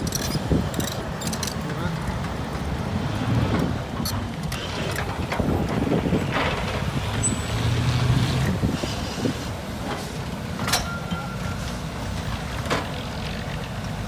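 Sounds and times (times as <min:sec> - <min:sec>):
truck diesel engine rumbling: 0:00.0 - 0:14.0
wind on microphone: 0:05.0 - 0:09.7.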